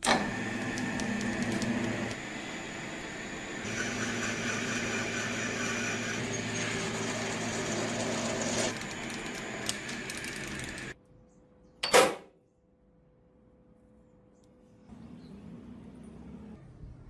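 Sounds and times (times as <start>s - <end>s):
power tool motor humming: 0.1s - 11.0s.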